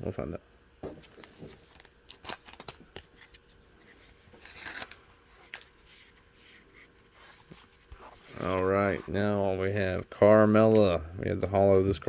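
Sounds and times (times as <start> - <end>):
card pack rustling: 1.0 - 9.2.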